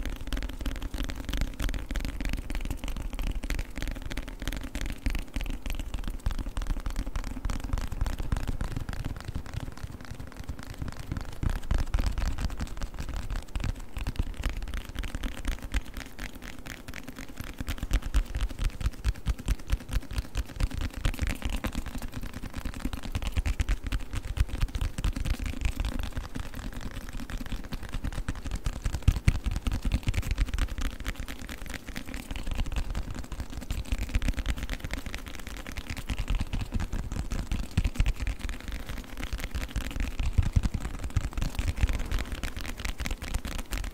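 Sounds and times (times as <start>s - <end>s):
fast tapping on a book: 0.0s - 43.9s.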